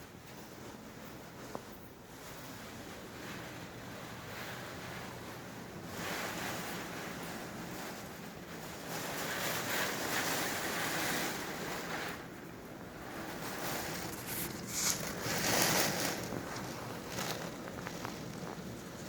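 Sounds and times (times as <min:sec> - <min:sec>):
hurricane wind gusts: 0:00.0 - 0:19.0
wind buffeting microphone: 0:00.0 - 0:19.0
surf rushing: 0:04.2 - 0:19.0.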